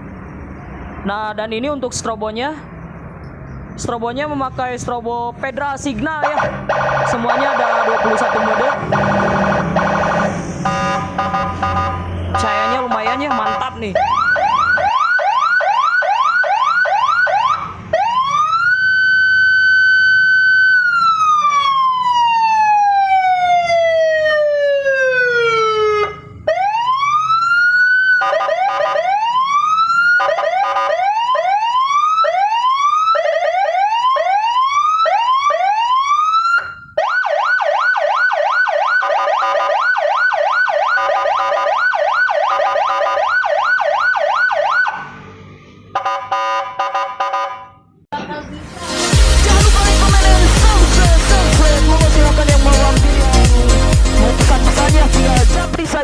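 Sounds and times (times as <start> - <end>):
electronic police siren: 6.2 - 47.7.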